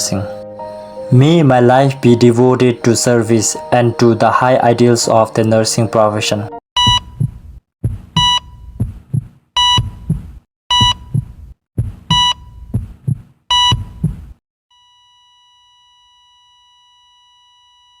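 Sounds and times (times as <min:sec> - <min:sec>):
heart monitor beeps: 0:06.8 - 0:11.3, 0:12.1 - 0:14.2
heartbeat thumps: 0:06.8 - 0:14.4
flatline tone: 0:14.7 - 0:18.0.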